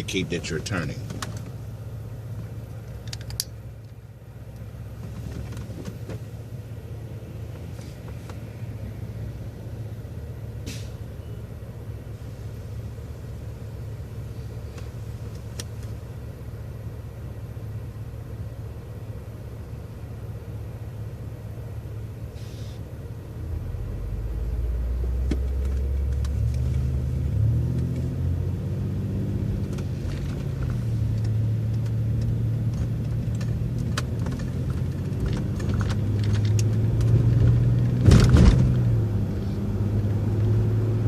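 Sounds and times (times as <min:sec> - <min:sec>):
bus engine and road drone: 0:00.0 - 0:41.0.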